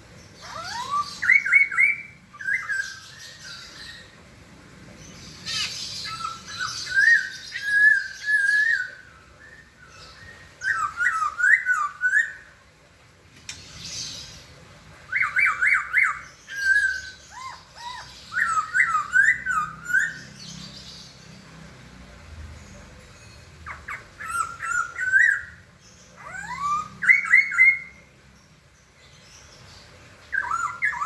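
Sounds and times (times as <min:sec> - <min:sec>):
bird whistling song: 0:00.3 - 0:04.2, 0:05.4 - 0:12.6, 0:15.1 - 0:21.2, 0:23.6 - 0:28.2, 0:29.6 - 0:31.0.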